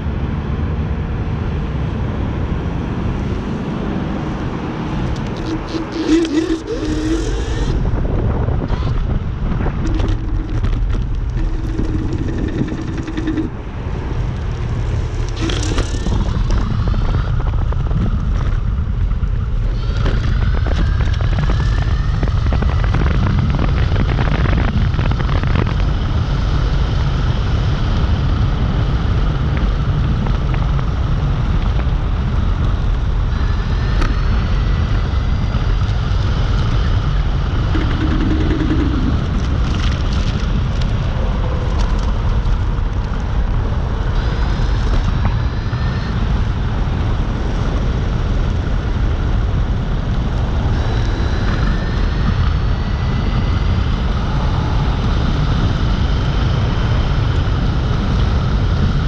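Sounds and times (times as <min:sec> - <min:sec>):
wind buffeting microphone: 0:00.0 - 0:59.0
electric motor whine: 0:04.8 - 0:27.4, 0:33.2 - 0:40.6.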